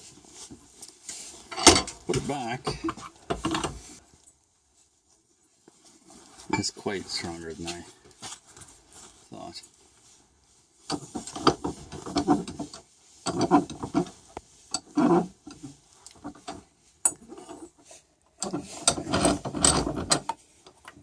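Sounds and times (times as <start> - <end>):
metal scraping and clinking in vise: 1.4 - 3.8, 10.9 - 17.8, 18.4 - 21.0.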